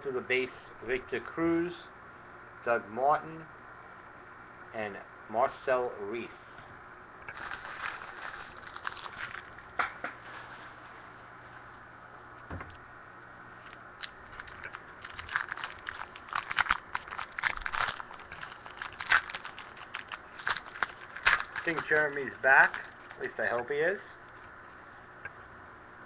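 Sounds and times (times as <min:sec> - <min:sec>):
plastic wrapper crinkling and tearing: 0:07.3 - 0:09.7, 0:14.0 - 0:23.4.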